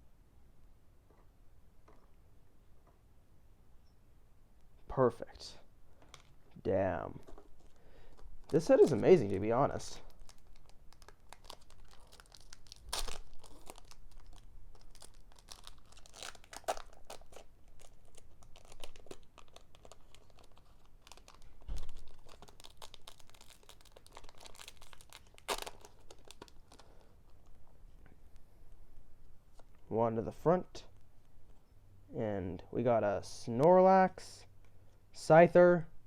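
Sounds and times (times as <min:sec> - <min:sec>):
foil pack crinkling and tearing: 0:06.0 - 0:06.4, 0:07.5 - 0:27.5
cards rustling and clicking: 0:07.1 - 0:27.5.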